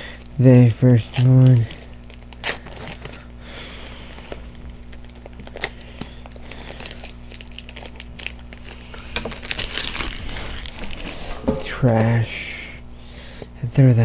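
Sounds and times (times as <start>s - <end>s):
foil wrapper tearing and crinkling: 1.0s - 11.1s.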